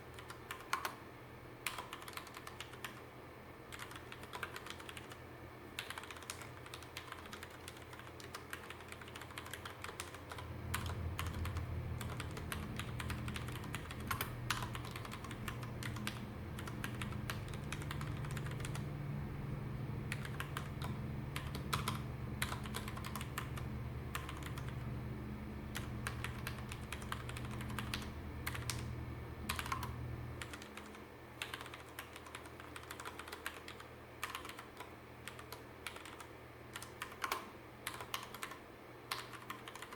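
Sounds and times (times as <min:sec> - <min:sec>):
low hum: 0:10.3 - 0:30.4.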